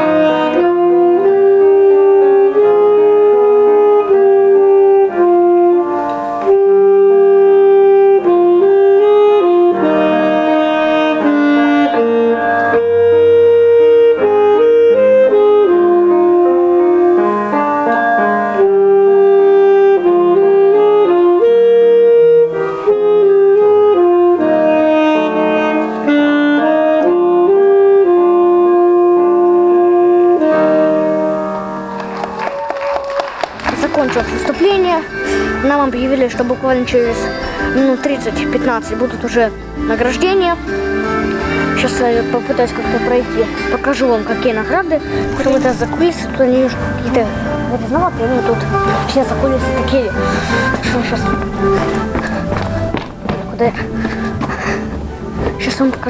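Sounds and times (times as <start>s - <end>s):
piano accompaniment: 0.0s - 56.0s
saxophone melody: 0.0s - 56.0s.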